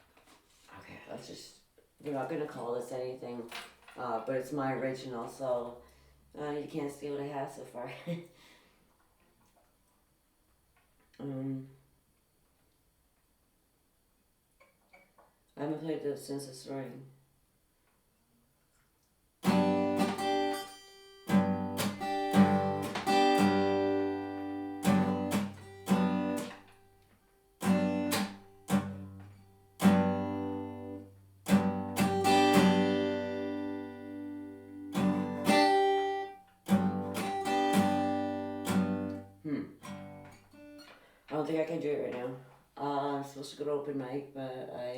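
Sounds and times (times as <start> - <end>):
acoustic guitar strumming chords: 19.4 - 40.9.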